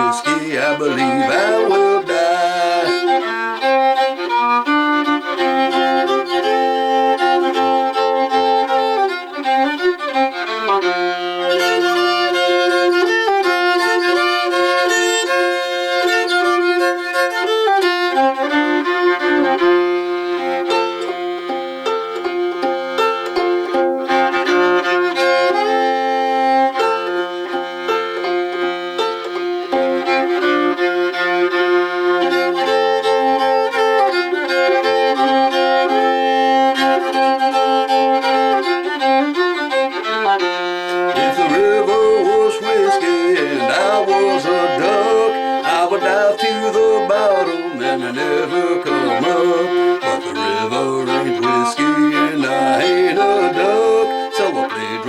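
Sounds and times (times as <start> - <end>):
fiddle playing double stops: 0.0 - 55.0
low fiddle string droning: 0.0 - 55.0.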